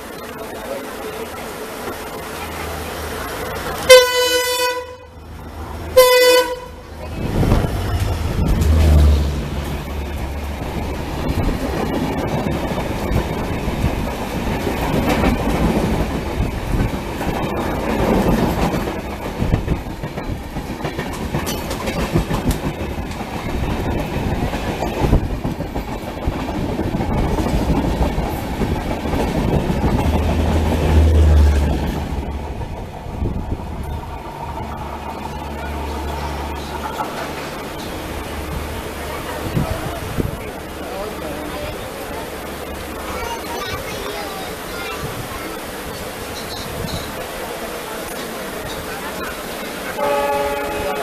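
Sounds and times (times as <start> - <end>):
train wheels clattering over rail joints: 7.0 - 41.7, 45.0 - 49.9.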